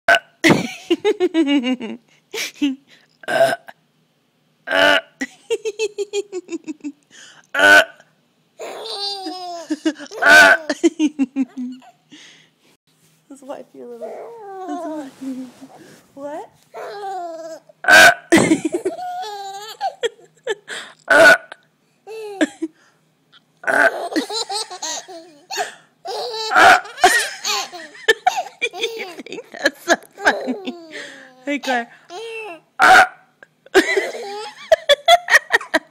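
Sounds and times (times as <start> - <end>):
woman making fake burps: 0.1 - 0.4, 3.2 - 3.8, 4.7 - 5.2, 7.5 - 8.1, 17.8 - 18.3, 21.1 - 21.6, 23.6 - 23.9
baby laughing: 8.6 - 12.0, 16.8 - 17.7, 18.4 - 20.7, 22.1 - 22.7, 23.7 - 31.4, 32.1 - 32.7, 33.8 - 35.9.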